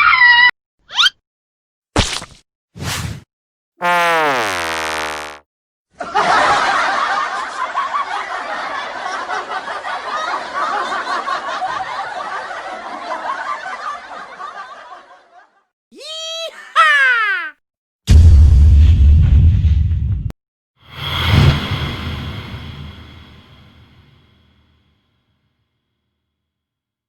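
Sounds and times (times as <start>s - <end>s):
crowd laughter: 6.0s - 15.7s.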